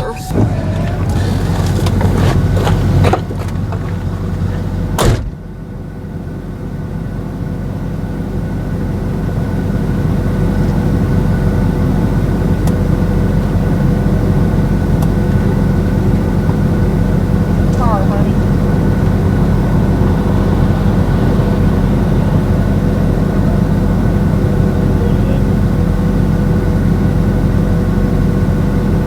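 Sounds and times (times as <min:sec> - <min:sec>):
car engine: 0:00.0 - 0:29.0
road noise: 0:00.0 - 0:29.0
knocks and sharp thunk: 0:05.0 - 0:05.5.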